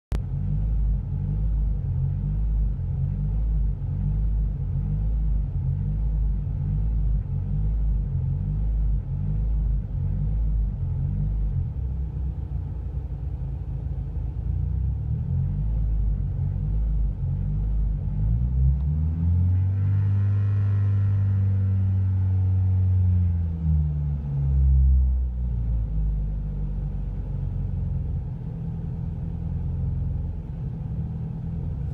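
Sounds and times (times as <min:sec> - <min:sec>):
car engine running unevenly: 0:00.2 - 0:18.5.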